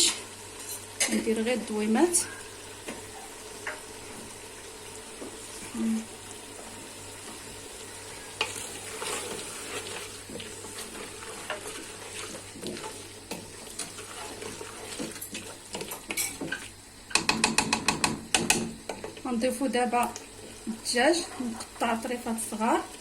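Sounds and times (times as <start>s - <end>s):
light sizzle of frying: 0.0s - 23.0s
spoon stirring and scraping pot: 8.2s - 19.3s, 20.2s - 22.2s.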